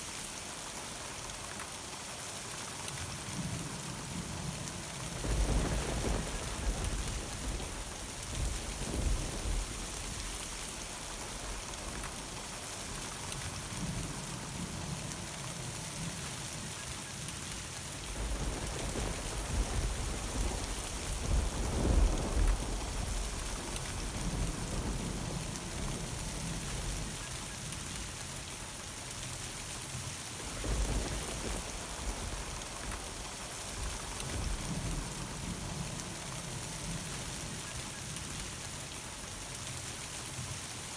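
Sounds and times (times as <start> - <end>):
rain falling: 0.0 - 40.9
thunder rumbling: 4.8 - 14.9, 18.0 - 27.4, 30.4 - 37.8.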